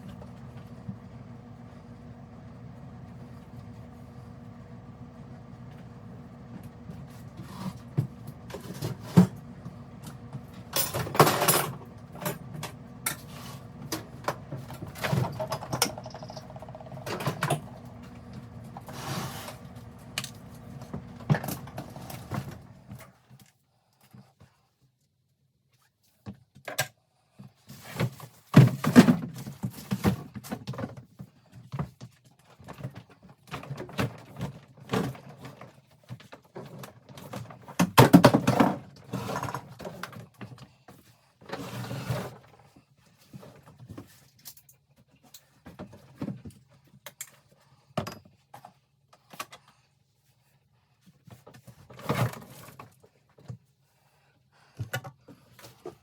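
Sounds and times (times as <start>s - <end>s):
steady electrical hum: 0.0s - 23.0s
objects knocking and clattering: 6.6s - 22.8s.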